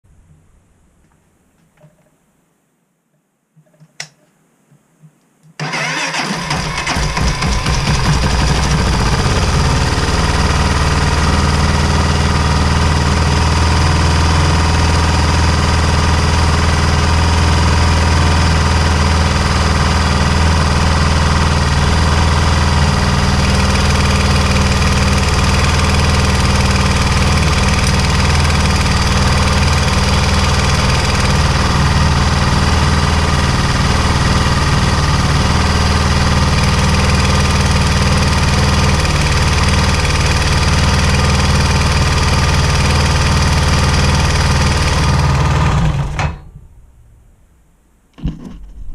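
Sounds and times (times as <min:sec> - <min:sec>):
knocking in the engine: 0:06.8 - 0:11.3
motorcycle engine idling: 0:06.8 - 0:46.2.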